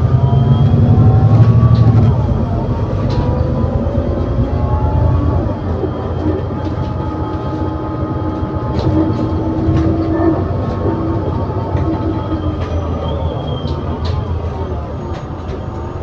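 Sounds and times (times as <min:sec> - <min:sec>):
driveline whine: 0:00.0 - 0:13.9
bus diesel engine drone: 0:00.0 - 0:16.0.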